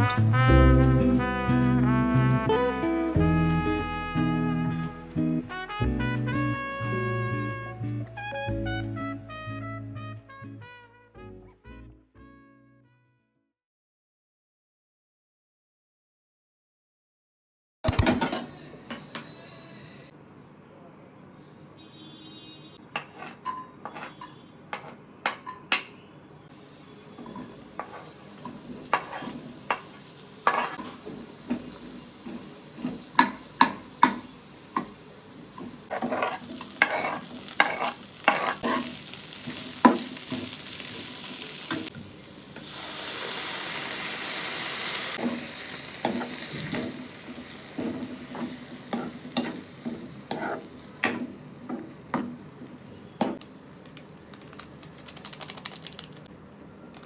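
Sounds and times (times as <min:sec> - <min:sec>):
utensil scraping a pan: 0:28.8 - 0:33.8, 0:35.6 - 0:40.6, 0:46.1 - 0:51.2
hiss: 0:42.6 - 0:47.7.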